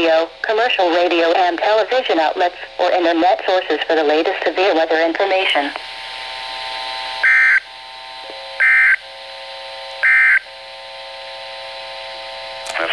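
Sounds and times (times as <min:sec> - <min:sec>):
steady buzzing tone: 0:05.2 - 0:12.9.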